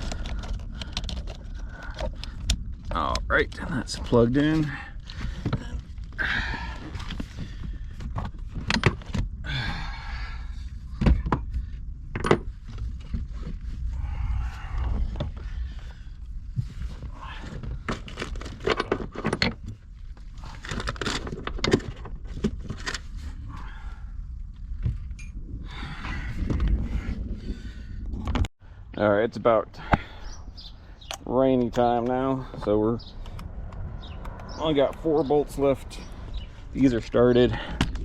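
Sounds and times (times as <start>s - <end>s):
steady low rumble: 0.0s - 38.0s
sharp clicks: 33.2s - 35.2s.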